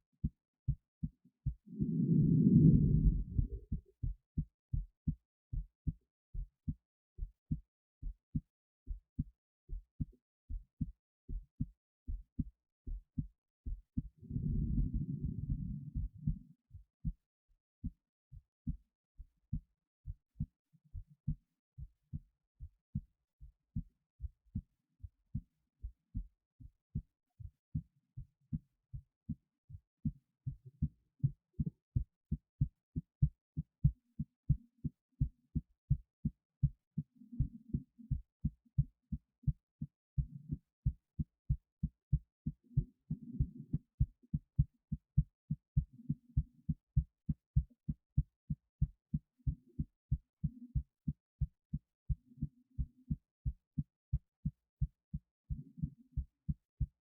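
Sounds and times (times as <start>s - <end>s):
heartbeat thumps: 0.2s - 17.2s, 29.2s - 57.0s
low rushing noise: 1.8s - 3.6s, 14.2s - 16.2s.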